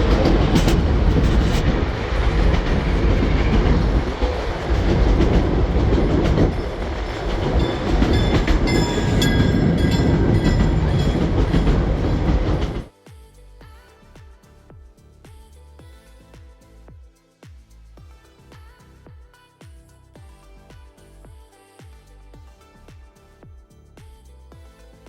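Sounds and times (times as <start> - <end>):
train rumbling and clattering on rails: 0.0 - 12.9
high-pitched squeaks: 6.5 - 12.8.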